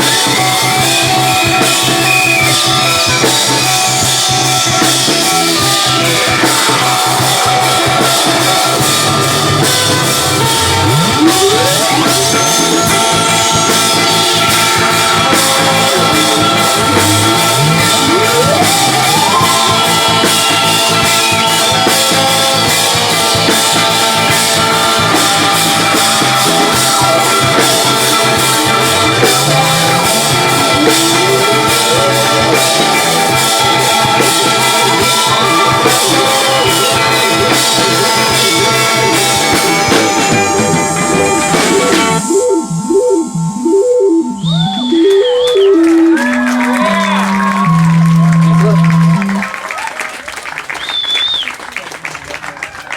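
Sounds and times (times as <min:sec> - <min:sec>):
band playing live: 0:00.0 - 0:52.0
rising pitch glide: 0:04.2 - 0:22.1, 0:24.3 - 0:49.8.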